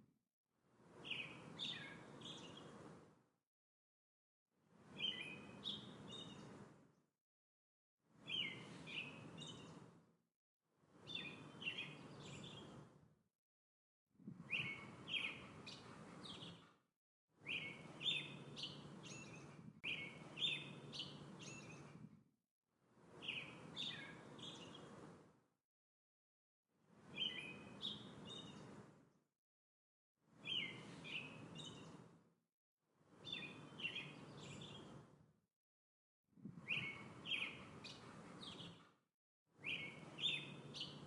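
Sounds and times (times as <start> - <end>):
bird chirping: 1.0 - 2.8, 5.0 - 6.6, 8.2 - 9.9, 11.1 - 12.8, 14.5 - 16.7, 17.4 - 22.0, 23.2 - 25.0, 27.1 - 28.8, 30.4 - 32.0, 33.2 - 35.0, 36.6 - 38.8, 39.6 - 41.0.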